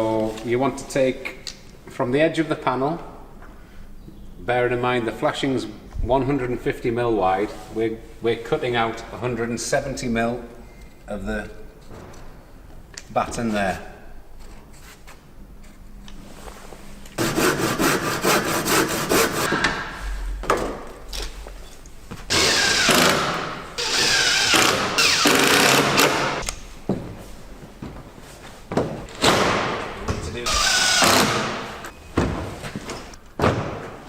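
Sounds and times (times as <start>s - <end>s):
power saw cutting wood: 17.2s - 19.5s, 22.3s - 26.4s, 30.5s - 31.9s.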